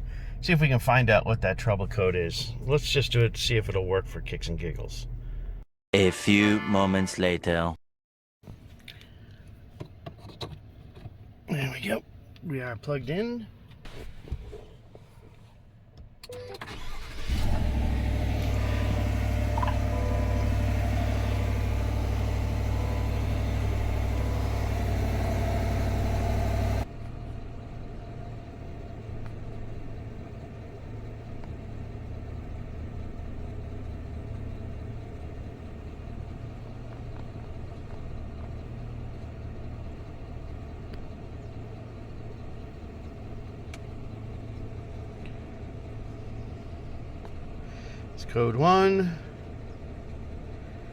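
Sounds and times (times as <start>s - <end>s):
engine starting and idling: 16.2s - 50.9s.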